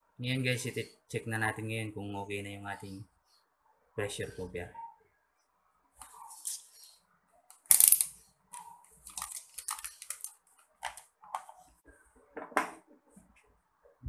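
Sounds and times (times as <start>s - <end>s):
handling clicks and rustles: 7.5s - 11.8s.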